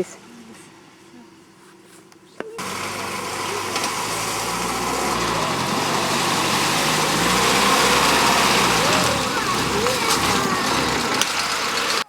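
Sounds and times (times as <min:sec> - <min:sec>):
car engine running: 0:02.6 - 0:12.0.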